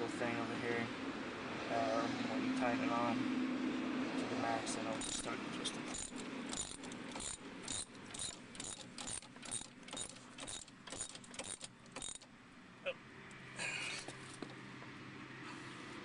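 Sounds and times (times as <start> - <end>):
ratchet wrench clicking: 5.0 - 12.3.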